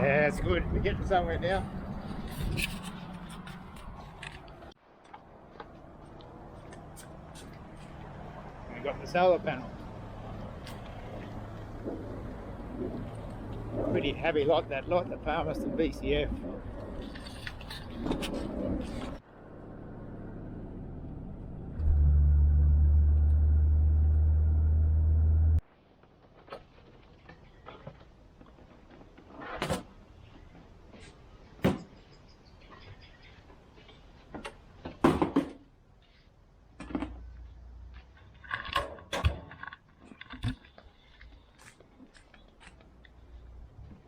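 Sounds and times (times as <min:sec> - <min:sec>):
vehicle drone from inside: 0:19.2 - 0:25.6.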